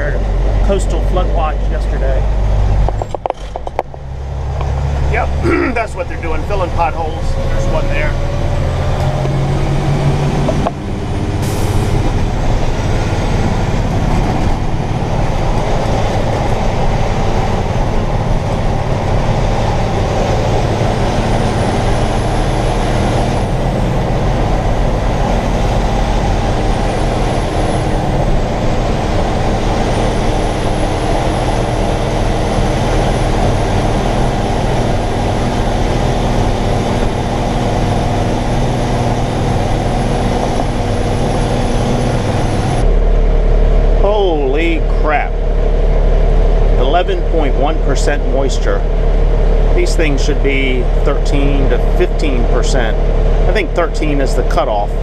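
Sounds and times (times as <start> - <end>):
heavy vehicle engine running: 0.0 - 55.0.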